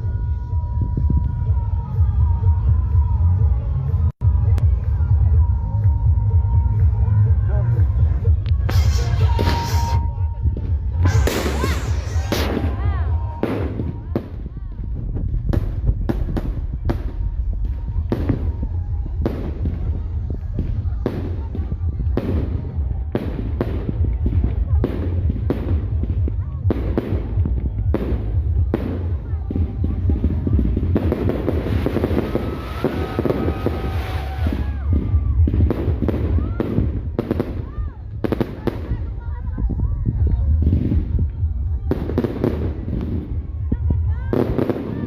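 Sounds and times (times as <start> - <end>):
low rumble: 0.0 - 45.0
fireworks bangs: 8.6 - 45.0
fireworks whistling: 8.7 - 14.1.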